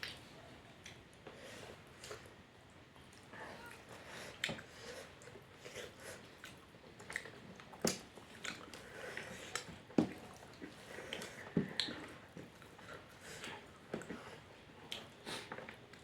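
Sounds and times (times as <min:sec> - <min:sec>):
person chewing with mouth smacks: 0:04.3 - 0:14.2.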